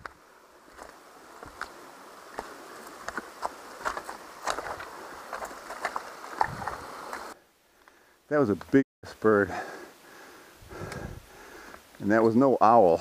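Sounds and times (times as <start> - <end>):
bike tyres humming on dirt: 0.0 - 7.4.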